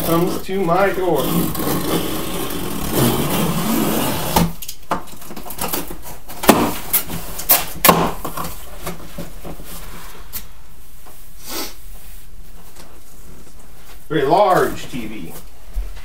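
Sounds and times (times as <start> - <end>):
cardboard carton knocks and thumps: 6.4 - 9.4.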